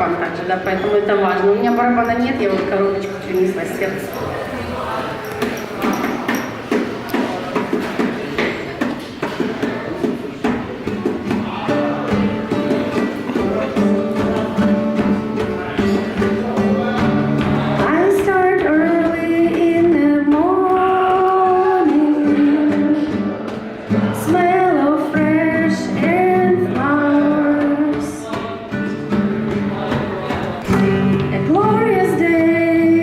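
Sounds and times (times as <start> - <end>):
guitar accompaniment: 0.0 - 33.0
tapped beat: 5.2 - 32.4
woman singing: 17.8 - 23.3, 23.9 - 28.3, 30.7 - 33.0.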